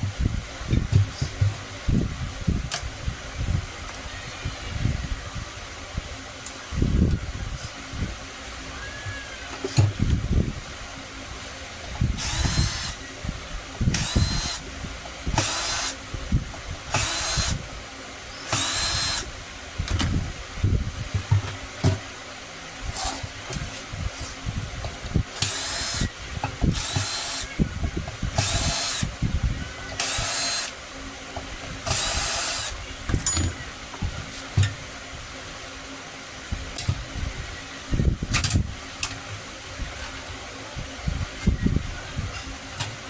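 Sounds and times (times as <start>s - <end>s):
power tool motor whine: 12.2s - 13.1s, 13.9s - 14.7s, 15.3s - 16.0s, 16.9s - 17.6s, 18.4s - 19.3s, 25.4s - 26.1s, 26.7s - 27.6s, 28.3s - 29.1s, 29.9s - 30.8s, 31.8s - 32.8s.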